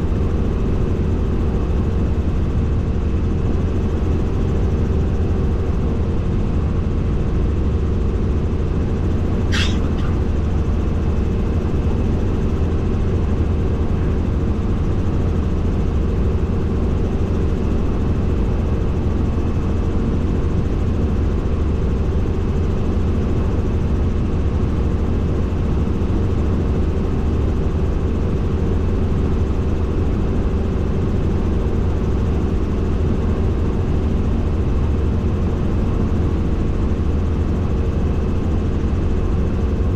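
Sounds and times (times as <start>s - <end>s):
helicopter engine and rotors droning: 0.0s - 39.9s
high-pitched squeak: 9.5s - 10.3s.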